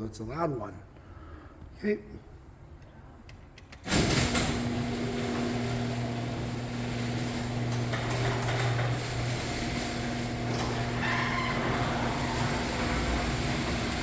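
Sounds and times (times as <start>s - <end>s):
garage door moving: 3.8s - 14.0s
garage door opener motor hum: 3.8s - 14.0s.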